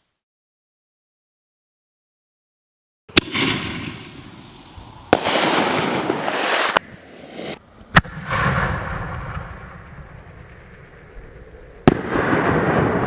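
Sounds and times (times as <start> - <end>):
firework bangs: 3.1 - 9.9, 11.8 - 13.0
hissing crackle: 4.4 - 7.6.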